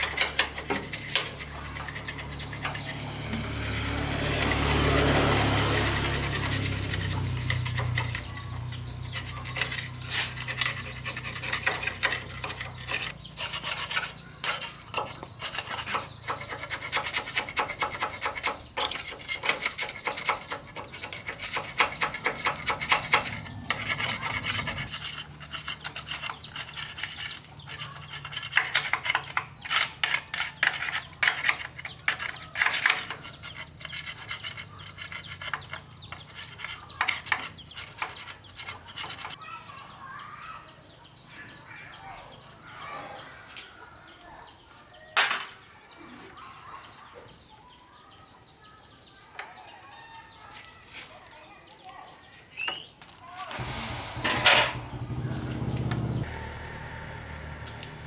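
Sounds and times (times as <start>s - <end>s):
abrasive rasping on a part: 0.0s - 39.4s
low hum: 53.6s - 58.0s.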